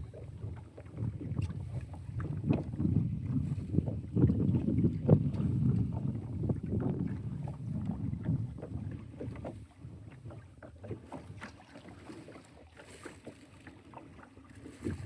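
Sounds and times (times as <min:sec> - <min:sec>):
wind on microphone: 0:00.0 - 0:11.5, 0:14.5 - 0:15.0
water splashing against kayak hull: 0:00.0 - 0:15.0.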